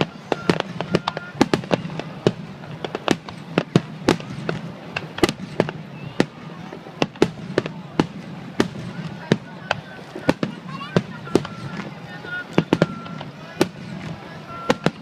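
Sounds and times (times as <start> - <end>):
fireworks bursting: 0.0 - 15.0.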